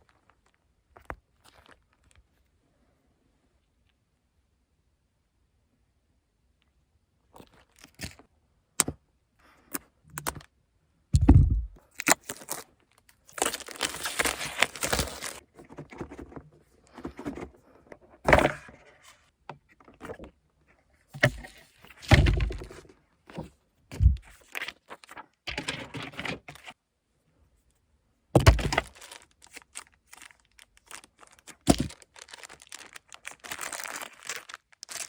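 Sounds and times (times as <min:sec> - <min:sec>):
keyboard heavy thunks: 0:11.2 - 0:11.8, 0:22.1 - 0:22.7, 0:23.9 - 0:24.3
rustling and scraping: 0:12.4 - 0:26.8.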